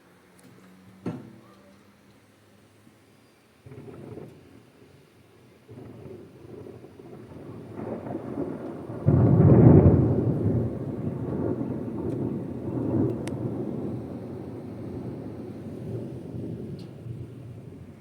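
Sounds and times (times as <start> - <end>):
thunder rumbling: 3.6 - 18.0.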